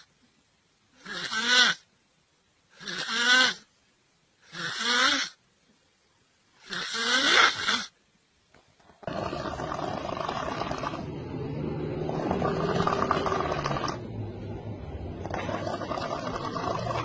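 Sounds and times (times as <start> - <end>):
person snoring: 6.6 - 7.9, 9.0 - 14.0, 15.2 - 17.0.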